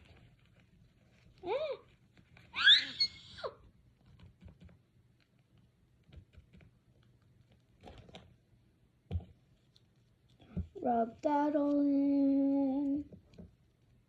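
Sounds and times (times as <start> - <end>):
paper rustling: 0.0 - 3.1.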